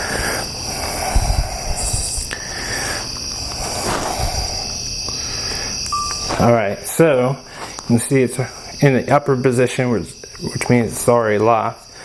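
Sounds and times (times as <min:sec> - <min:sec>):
crickets chirping: 0:00.0 - 0:12.0
rustling handling noise: 0:06.0 - 0:07.9.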